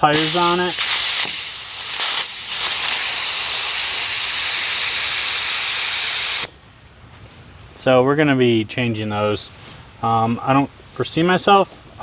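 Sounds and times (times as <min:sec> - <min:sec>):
air hissing from tire valve: 0:00.0 - 0:06.5.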